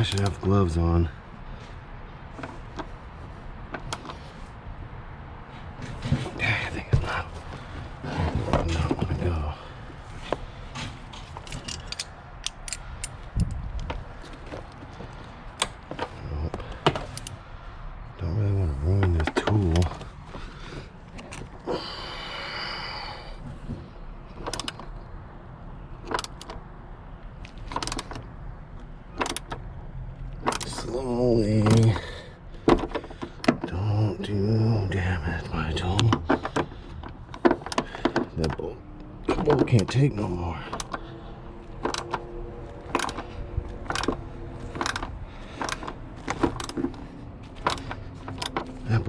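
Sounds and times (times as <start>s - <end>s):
bolt grinding and squealing: 10.8s - 17.4s
metallic clicking: 11.1s - 14.0s.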